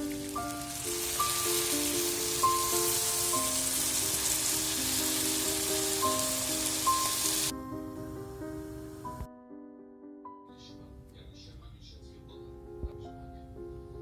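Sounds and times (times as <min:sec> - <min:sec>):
food sizzling in hot oil: 0:00.0 - 0:09.3.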